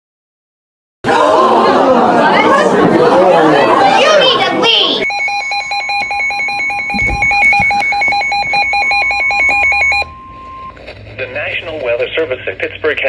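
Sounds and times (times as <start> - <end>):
rapid electronic alert beeping: 5.0 - 10.2
steady electronic tone: 5.0 - 10.2.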